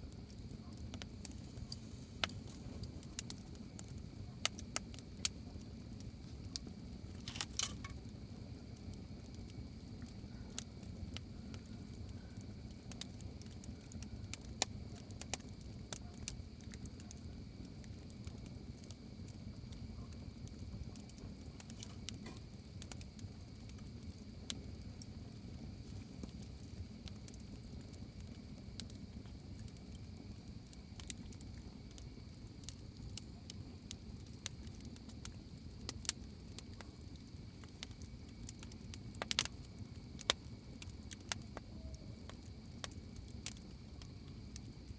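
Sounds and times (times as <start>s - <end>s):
low steady rumble: 0.0s - 15.8s
campfire crackling and popping: 0.0s - 44.9s.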